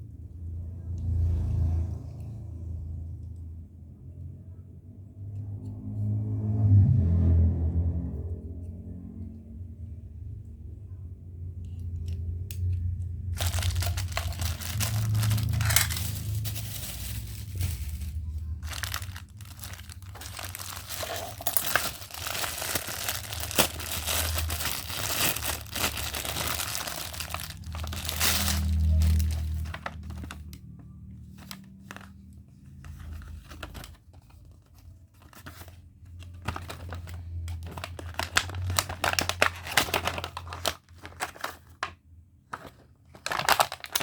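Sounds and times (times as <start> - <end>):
plastic packaging crinkling: 11.9 - 30.6, 31.3 - 34.5, 35.2 - 41.9, 42.5 - 44.0.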